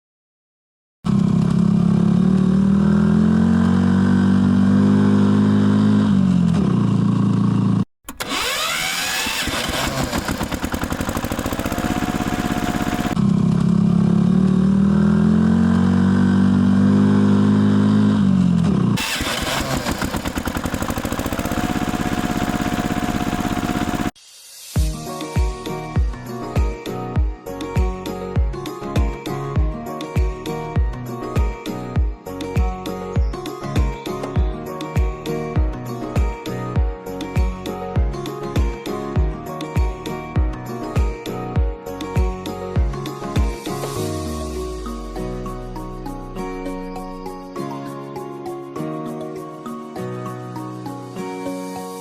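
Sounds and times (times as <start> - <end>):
vehicle engine idling and revving: 1.1 - 24.2.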